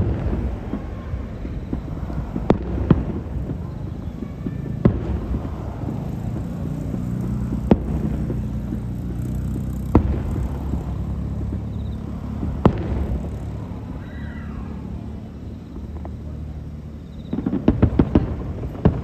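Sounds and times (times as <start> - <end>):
fireworks shells bursting: 0.0 - 14.1
sharp bangs: 0.0 - 16.4
low rumble of explosions: 0.0 - 19.0.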